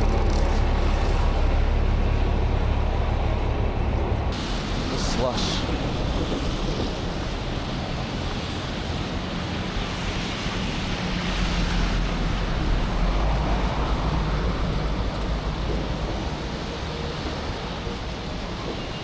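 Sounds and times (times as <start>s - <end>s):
low traffic rumble: 0.0s - 19.0s
tyres hissing through wet slush: 4.4s - 19.0s.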